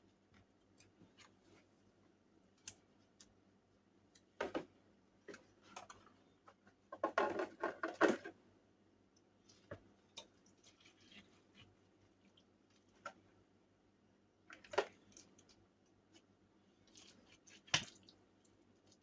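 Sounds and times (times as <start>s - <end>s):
sticky mixture squishing: 14.5s - 19.0s.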